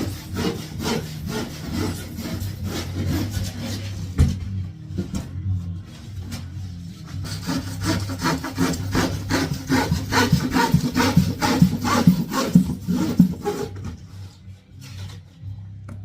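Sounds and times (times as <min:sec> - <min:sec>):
handsaw sawing: 0:00.0 - 0:04.0, 0:07.0 - 0:13.8.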